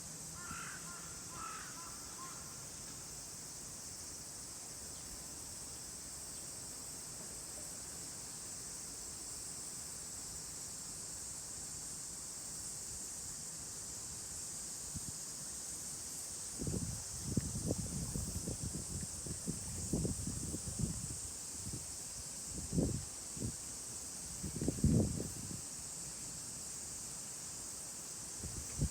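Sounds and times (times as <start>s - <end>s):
insect chorus: 0.0s - 28.9s
crow cawing: 0.4s - 2.6s.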